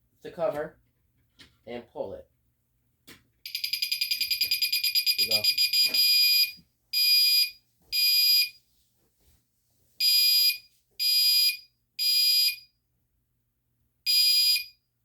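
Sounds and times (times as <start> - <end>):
fire alarm blasts: 3.5 - 8.5, 10.0 - 12.7, 14.1 - 14.8.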